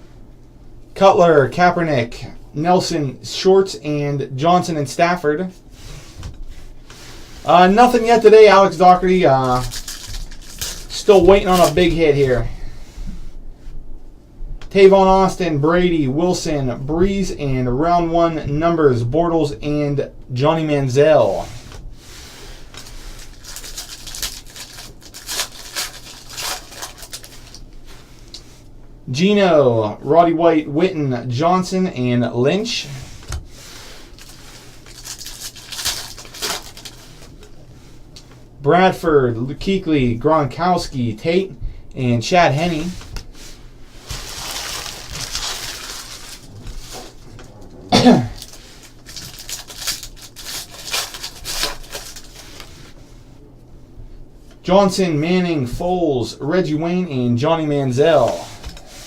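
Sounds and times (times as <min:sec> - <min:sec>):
foil wrappers crinkling and tearing: 0:07.4 - 0:12.3, 0:22.6 - 0:27.7, 0:33.7 - 0:37.6, 0:44.0 - 0:47.4, 0:48.2 - 0:52.8.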